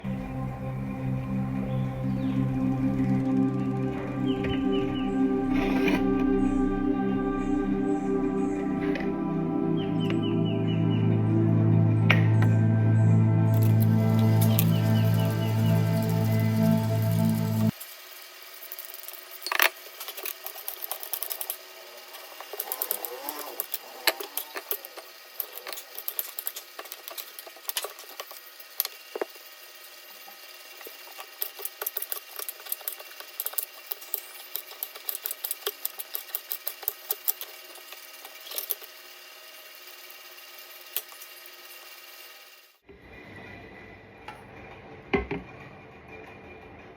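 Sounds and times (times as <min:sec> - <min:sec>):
faint steady hum: 0:00.0 - 0:17.8.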